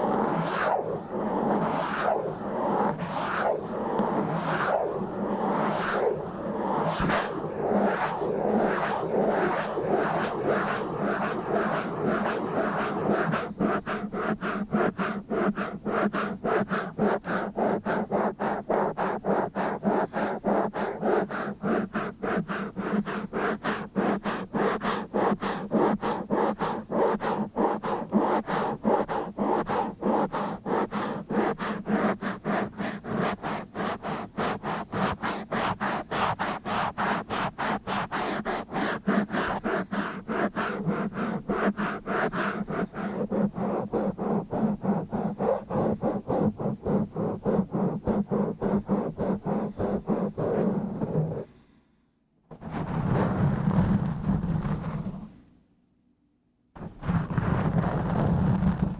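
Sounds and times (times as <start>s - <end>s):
scratching on microphone: 0.0s - 51.5s, 52.5s - 55.4s, 56.8s - 58.9s.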